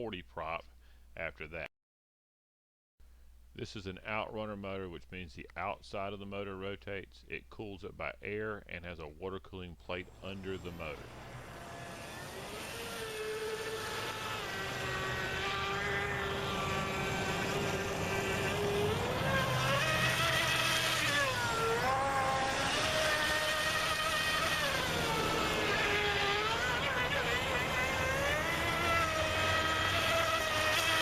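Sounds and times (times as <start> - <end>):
model boat motor whining: 9.9 - 31.0.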